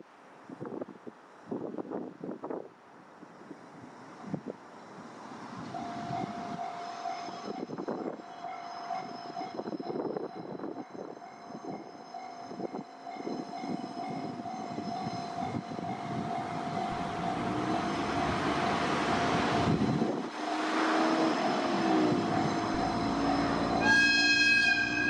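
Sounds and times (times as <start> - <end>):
level crossing warning alarm: 5.8 - 25.0
wind on microphone: 9.3 - 23.8.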